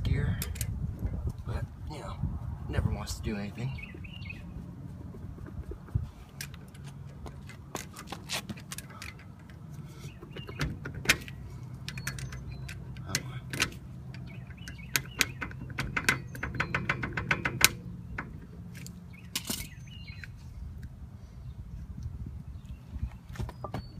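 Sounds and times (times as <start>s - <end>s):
steady low hum: 0.0s - 23.6s
metal parts clinking and scraping: 10.8s - 15.1s, 18.8s - 20.4s.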